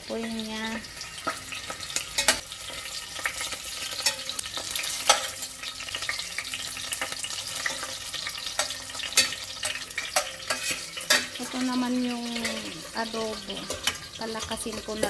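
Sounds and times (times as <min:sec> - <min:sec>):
chicken sizzling in hot oil: 0:00.0 - 0:15.0
utensil scraping a pan: 0:06.8 - 0:15.0.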